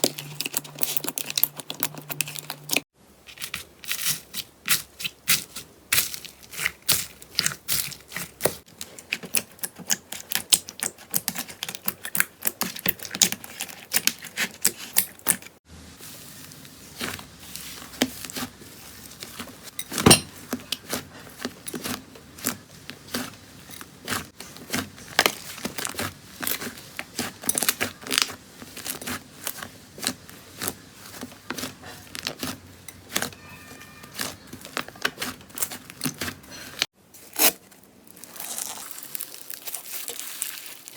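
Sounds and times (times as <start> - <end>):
slime crackling and popping: 24.1 - 36.4, 38.1 - 40.9.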